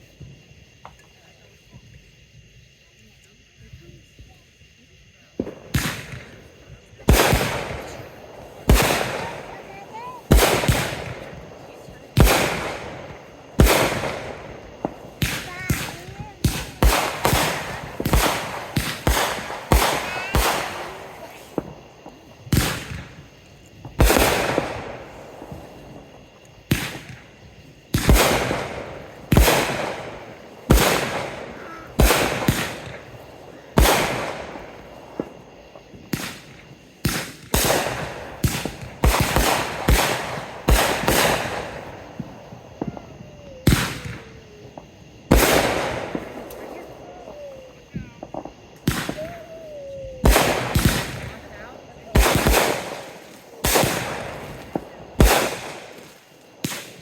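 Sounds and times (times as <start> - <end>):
fireworks banging with echo: 5.1 - 57.0.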